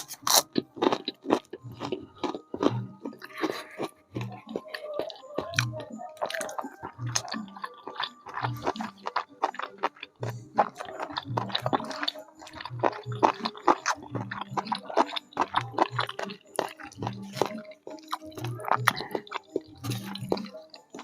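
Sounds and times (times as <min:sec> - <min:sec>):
wet chewing and slurping: 0:00.0 - 0:21.0.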